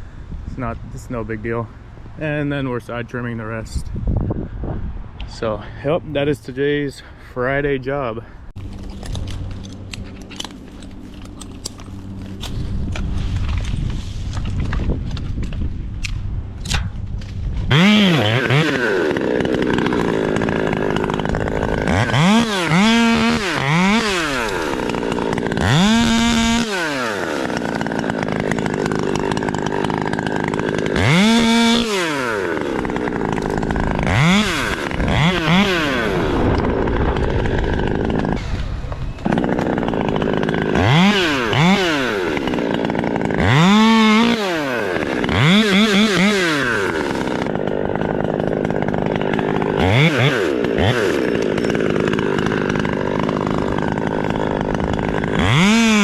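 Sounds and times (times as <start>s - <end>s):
chainsaw engine revving: 17.7s - 56.0s.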